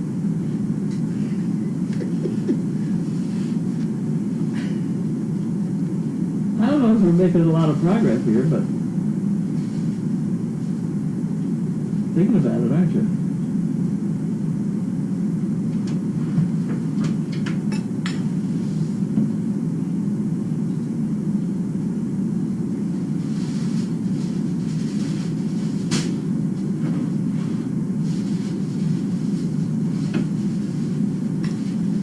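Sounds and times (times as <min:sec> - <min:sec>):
steady low rumble: 0:00.0 - 0:32.0.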